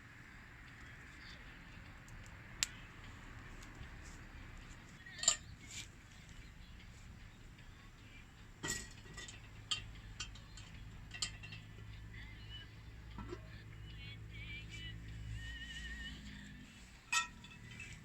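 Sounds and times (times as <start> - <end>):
metal camp gear clinking: 4.9 - 6.4, 8.6 - 12.2, 13.1 - 13.7, 16.9 - 18.0.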